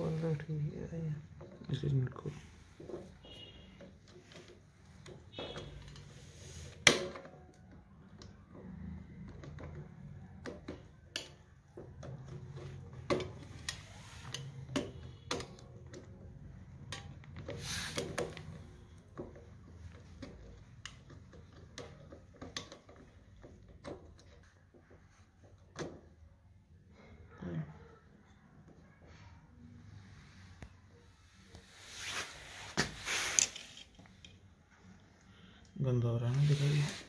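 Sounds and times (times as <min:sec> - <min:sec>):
plastic and metal parts clicking: 0:06.8 - 0:26.1.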